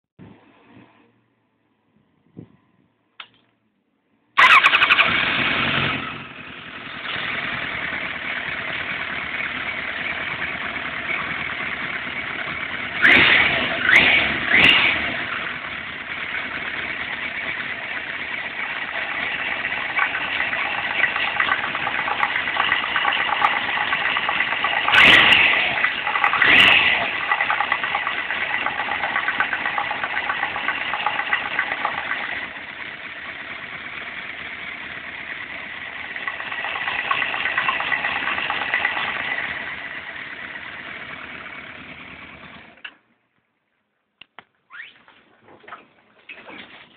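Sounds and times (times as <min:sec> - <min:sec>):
engine knock: 0:04.4 - 0:42.8
motorcycle engine idling: 0:04.4 - 0:43.1
engine revving blips: 0:13.0 - 0:15.4, 0:20.6 - 0:27.7.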